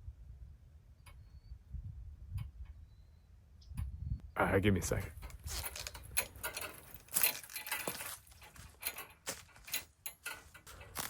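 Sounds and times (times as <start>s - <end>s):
rustling: 5.1s - 11.0s.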